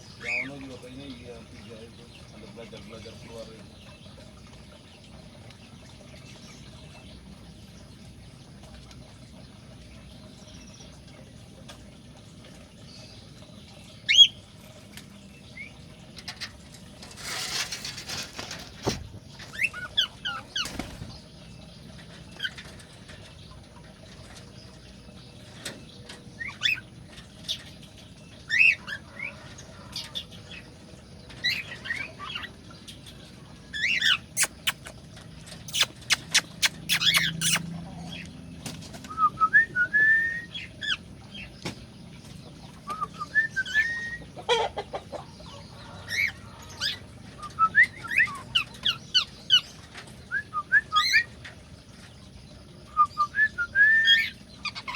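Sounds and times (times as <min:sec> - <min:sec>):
wing flapping: 0:16.9 - 0:21.4
cockatiels chirping and whistling: 0:35.7 - 0:37.6, 0:42.9 - 0:44.2, 0:46.1 - 0:49.6, 0:50.3 - 0:51.3, 0:53.0 - 0:54.9.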